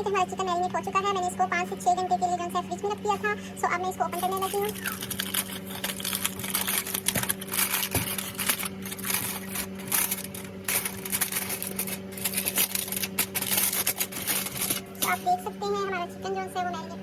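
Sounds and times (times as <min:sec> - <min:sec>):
aluminium foil crinkling: 0:04.1 - 0:15.4.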